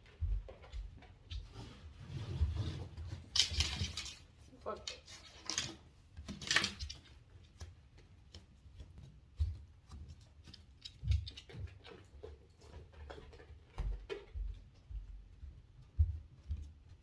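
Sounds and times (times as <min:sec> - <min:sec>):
soft low footstep thumps: 0:00.0 - 0:01.5, 0:13.7 - 0:17.0
dog claws clicking on hard floor: 0:03.0 - 0:14.8.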